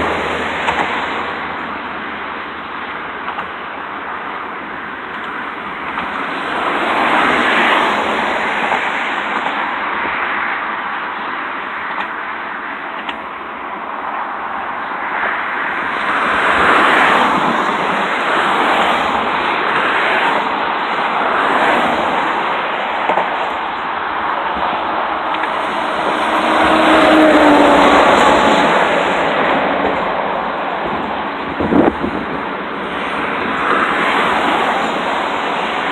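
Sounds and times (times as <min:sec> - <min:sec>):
combine harvester running: 0:22.4 - 0:35.9.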